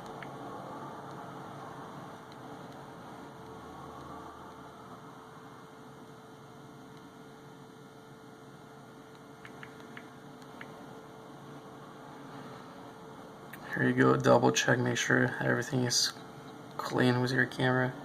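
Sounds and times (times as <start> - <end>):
low electrical hum: 0.0 - 18.0
faint light clicks: 9.1 - 10.8.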